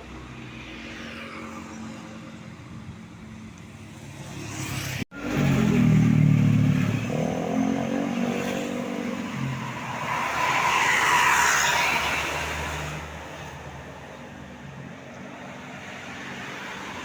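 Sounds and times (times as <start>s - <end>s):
traffic rumble: 0.0s - 17.0s
bus passing close: 4.3s - 17.0s.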